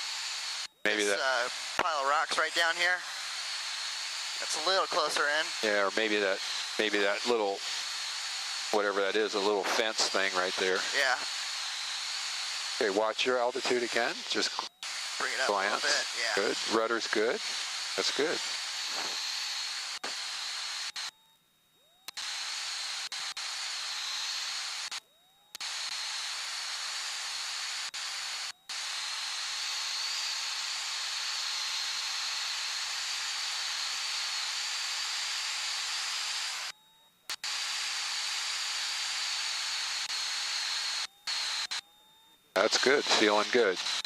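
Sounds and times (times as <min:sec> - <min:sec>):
thin high whine: 0:00.0 - 0:44.0
cockpit noise hiss through headset: 0:04.3 - 0:20.3, 0:42.6 - 0:44.0.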